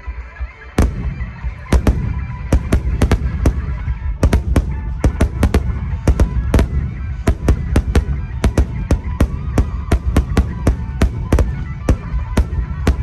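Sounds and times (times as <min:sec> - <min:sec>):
firework shells bursting: 0:00.8 - 0:13.0.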